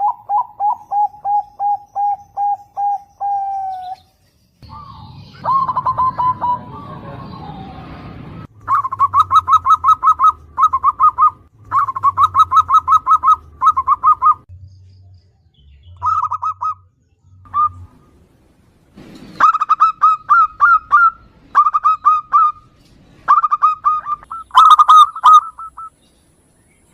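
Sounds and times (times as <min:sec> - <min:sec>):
dove chick begging chirps: 0:00.0 - 0:07.6, 0:08.6 - 0:14.4, 0:16.0 - 0:16.8, 0:19.4 - 0:26.0.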